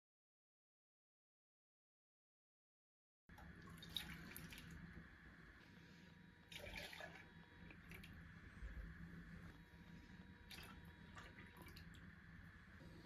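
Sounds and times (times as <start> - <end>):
running water splashing in sink: 3.6 - 4.9, 6.5 - 8.2.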